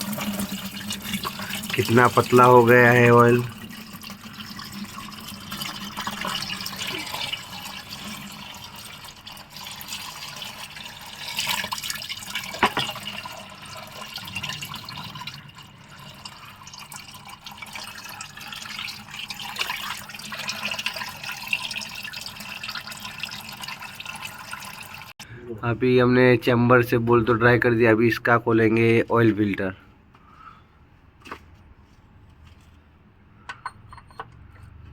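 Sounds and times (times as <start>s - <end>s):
oil trickling into a pan: 0.0s - 25.1s.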